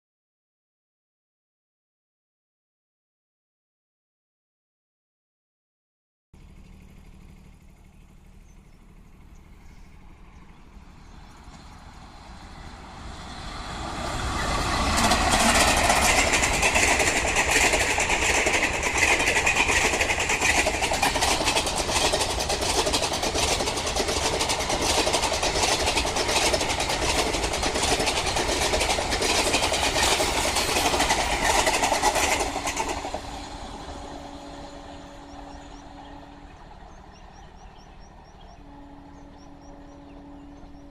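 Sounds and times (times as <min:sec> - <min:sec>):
train passing on rails: 0:06.4 - 0:40.9
train wheels cracking over track: 0:11.2 - 0:38.2.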